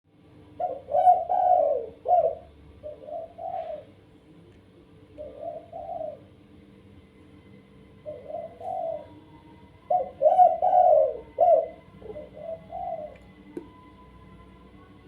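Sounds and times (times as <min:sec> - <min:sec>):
dove cooing: 0:00.6 - 0:04.0, 0:05.1 - 0:06.4, 0:08.0 - 0:13.4.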